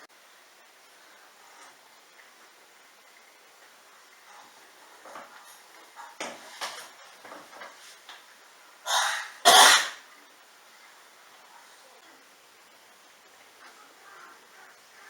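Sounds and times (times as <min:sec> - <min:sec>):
person coughing: 0:08.9 - 0:10.0.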